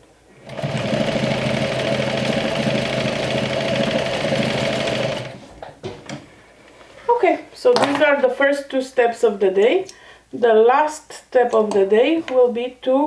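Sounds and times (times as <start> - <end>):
sewing machine stitching: 0.3 - 5.6.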